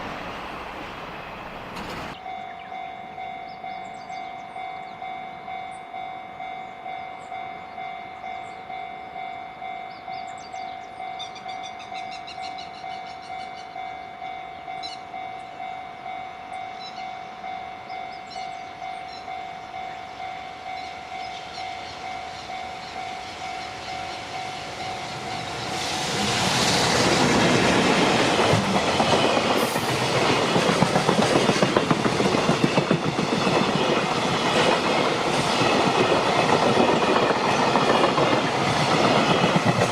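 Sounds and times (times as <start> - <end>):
train passing: 0.0 - 39.9
train wheels clickety-clack: 1.6 - 2.2, 20.8 - 39.9.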